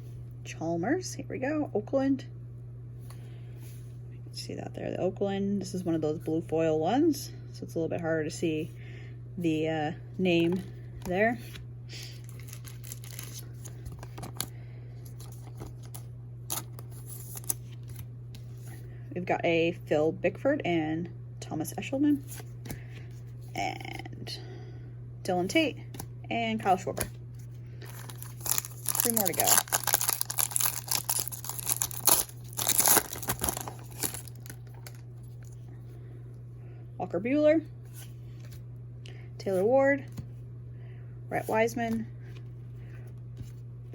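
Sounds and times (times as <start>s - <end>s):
low electrical hum: 0.0s - 43.9s
cards and packaging rustling: 10.4s - 18.6s, 27.8s - 35.6s
plastic wrapper tearing and crinkling: 12.2s - 14.5s, 15.2s - 18.0s, 27.8s - 35.5s.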